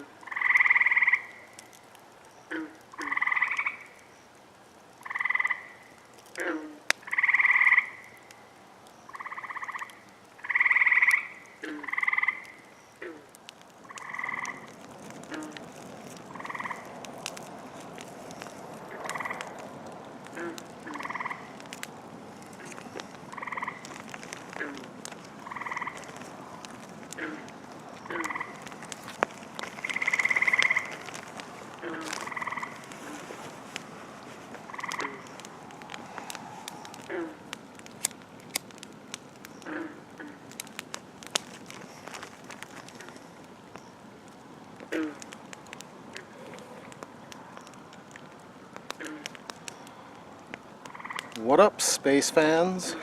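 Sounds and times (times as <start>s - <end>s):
frog chorus: 0.0s - 1.7s, 2.3s - 4.1s, 5.0s - 8.3s, 9.0s - 17.4s, 18.4s - 19.6s, 20.3s - 21.8s, 22.5s - 33.2s, 34.6s - 37.5s, 39.5s - 40.6s, 44.9s - 45.4s, 48.9s - 49.9s, 50.8s - 51.4s.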